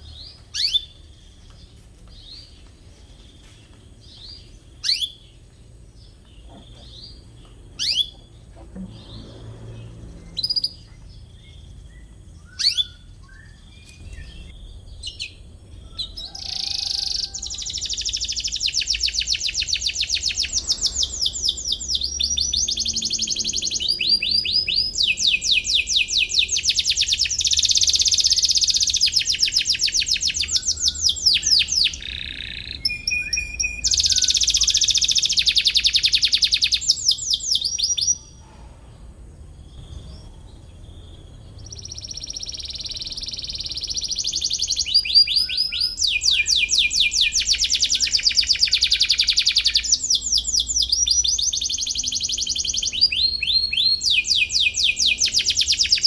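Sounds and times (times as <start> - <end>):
canary chirping and trilling: 0.0 - 1.3, 4.1 - 5.4, 6.4 - 38.4, 39.6 - 56.0.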